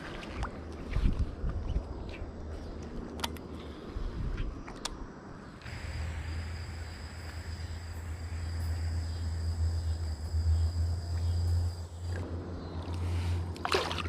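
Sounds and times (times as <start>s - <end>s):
low steady rumble: 0.6s - 14.0s
insects trilling: 4.6s - 13.5s.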